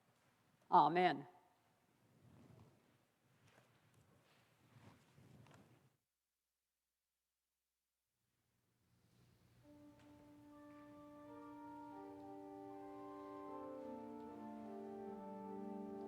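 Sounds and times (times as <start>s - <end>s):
sustained hymn chords: 9.7s - 16.0s.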